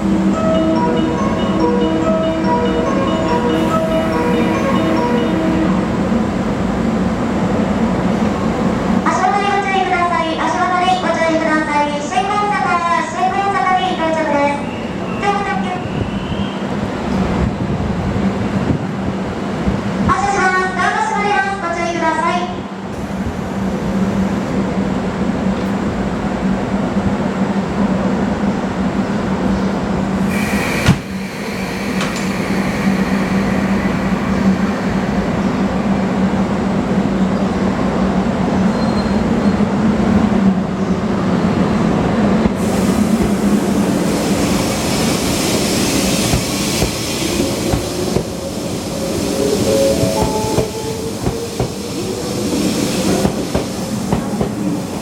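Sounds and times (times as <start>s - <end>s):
train running hum: 0.0s - 55.0s.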